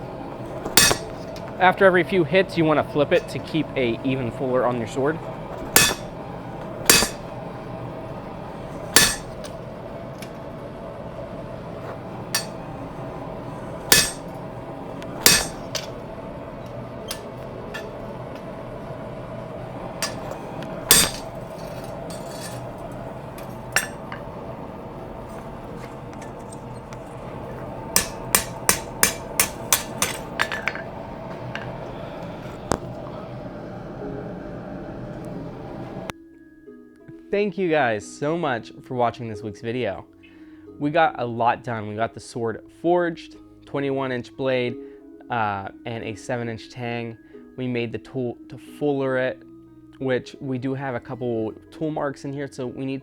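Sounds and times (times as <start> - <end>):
steady background hum: 0.0 - 36.2
hammer striking metal tool: 0.6 - 1.5, 5.6 - 6.2, 6.8 - 7.3, 8.8 - 9.6, 12.3 - 12.7, 13.8 - 14.4, 15.1 - 18.5, 20.0 - 24.3, 27.9 - 31.8.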